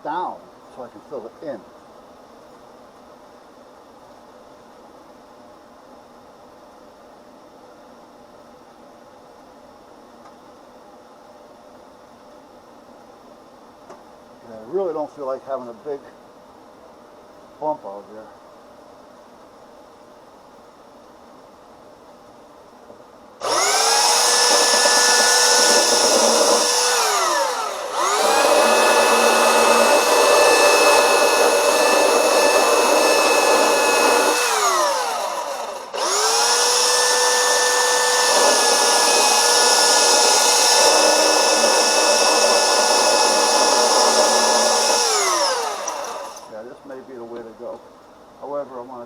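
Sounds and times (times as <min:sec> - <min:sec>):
electric sander motor whine: 0:23.4 - 0:46.5.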